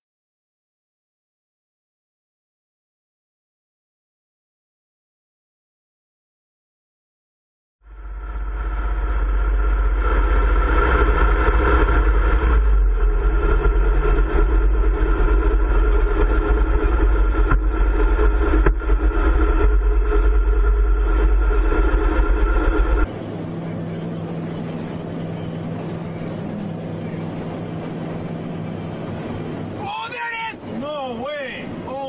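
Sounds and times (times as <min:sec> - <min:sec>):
low hum: 0:07.8 - 0:32.0
vehicle engine running: 0:07.8 - 0:32.0.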